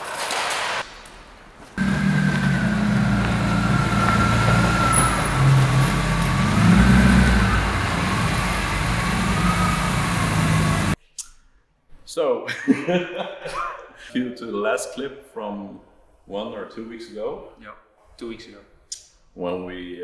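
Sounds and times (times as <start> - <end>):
car engine drone: 1.2 - 11.0
high wavering whine: 1.8 - 11.0.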